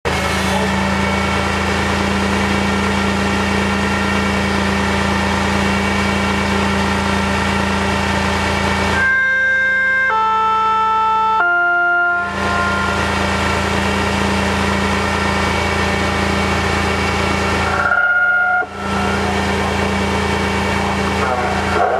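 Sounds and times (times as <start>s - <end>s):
loudspeaker electrical hum: 0.1s - 21.9s
descending electronic siren tones: 0.9s - 21.9s.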